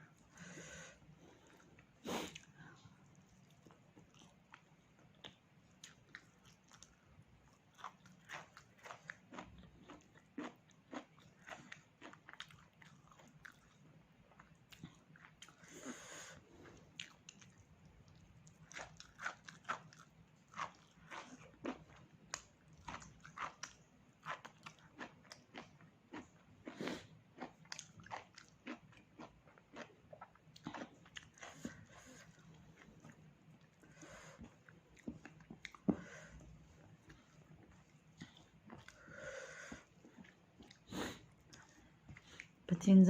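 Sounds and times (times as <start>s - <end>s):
person chewing and biting: 5.2s - 13.8s, 17.0s - 33.2s.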